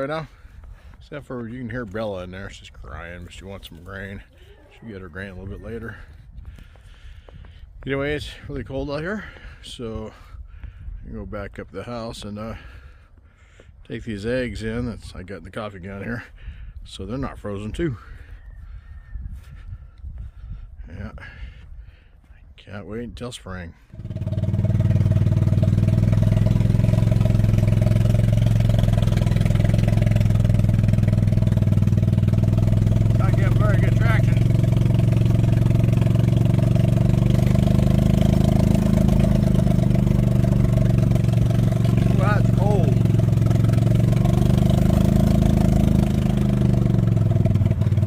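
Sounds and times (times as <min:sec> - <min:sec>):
small engine running steadily: 0:23.9 - 0:48.0.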